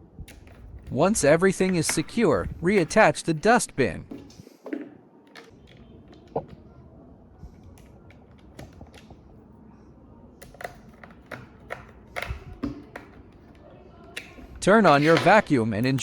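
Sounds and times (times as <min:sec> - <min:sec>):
plastic parts clicking: 0:10.4 - 0:16.0.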